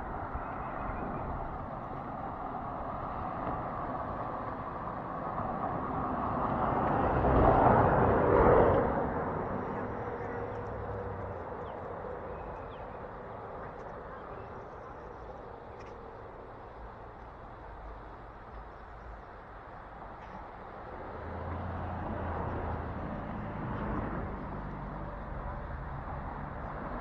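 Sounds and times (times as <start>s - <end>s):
vehicle passing by: 2.9s - 14.4s, 20.9s - 27.0s.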